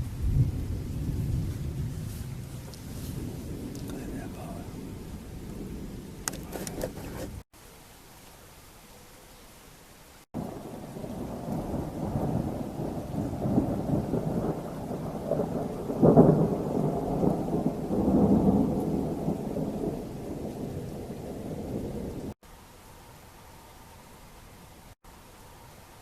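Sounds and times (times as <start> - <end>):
thunder rumbling: 0.0 - 7.4, 10.4 - 22.4.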